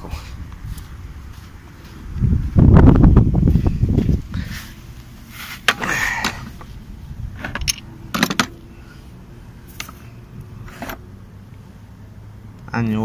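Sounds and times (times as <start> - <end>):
metal parts clinking and rattling: 7.4 - 8.6.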